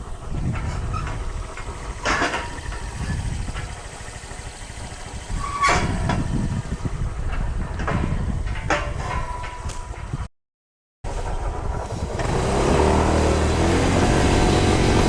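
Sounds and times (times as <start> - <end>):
wind on microphone: 0.0 - 10.3
scooter engine running: 0.7 - 7.2, 11.5 - 15.0.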